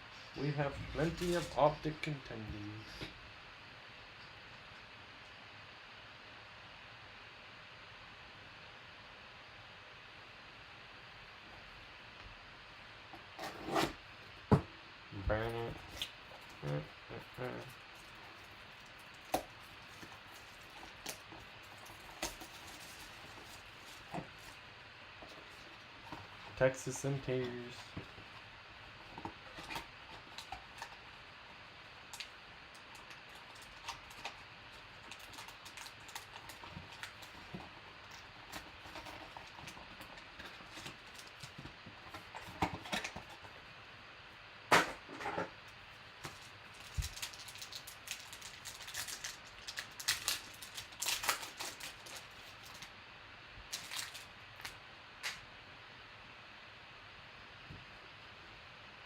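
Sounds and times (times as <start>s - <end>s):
card packs being torn open: 1.0s - 1.8s, 15.4s - 24.6s, 25.3s - 28.1s, 29.1s - 31.1s, 32.1s - 43.5s, 46.2s - 52.9s, 53.7s - 55.4s.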